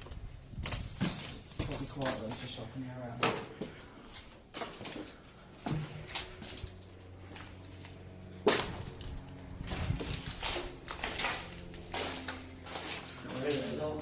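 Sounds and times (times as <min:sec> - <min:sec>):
footsteps crunching on broken glass: 0:09.6 - 0:14.0.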